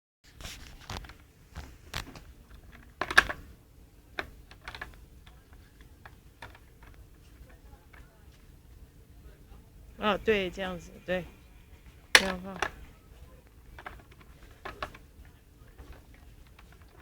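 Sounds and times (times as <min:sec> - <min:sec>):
plastic vacuum parts clicking: 0:00.7 - 0:08.5, 0:12.0 - 0:17.0.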